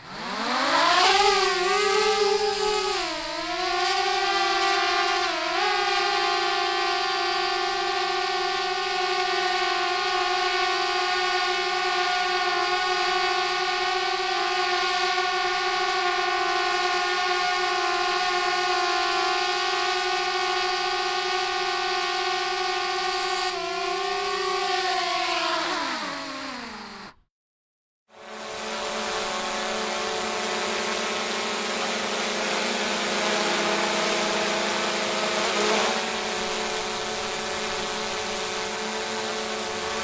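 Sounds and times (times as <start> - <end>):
drone propellers whining: 0.0 - 9.4, 22.4 - 27.2.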